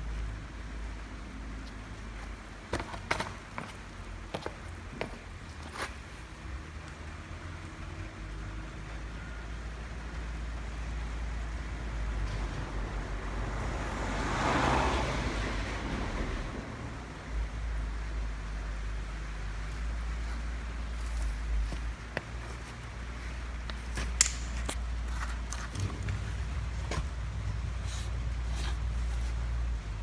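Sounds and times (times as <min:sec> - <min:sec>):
scooter engine idling: 0:20.2 - 0:30.0.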